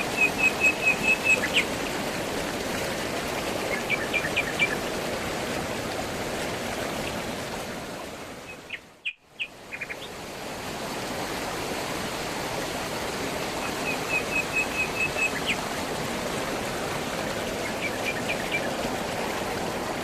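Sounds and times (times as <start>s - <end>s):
stream flowing: 0.0s - 20.0s
small birds chirping: 0.1s - 1.7s, 8.5s - 10.1s, 17.6s - 18.8s.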